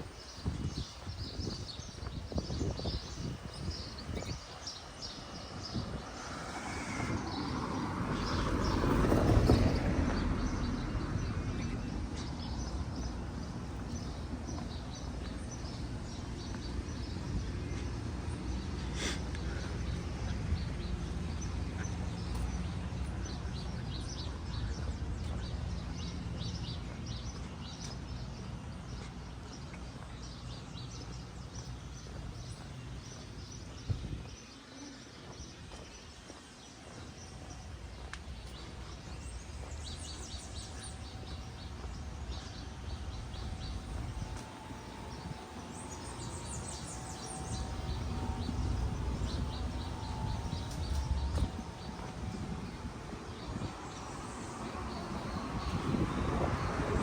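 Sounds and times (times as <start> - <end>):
low outdoor rumble: 0.0 - 35.0, 37.4 - 57.0
small birds chirping: 0.0 - 57.0
rush of noise: 5.4 - 10.0.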